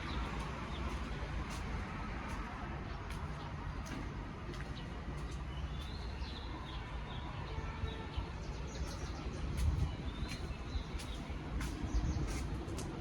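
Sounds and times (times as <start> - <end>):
birds chirping: 2.8 - 12.7.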